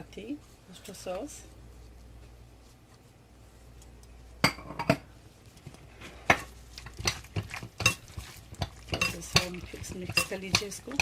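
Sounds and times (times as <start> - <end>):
spoon clinking against bowl: 8.9 - 11.0.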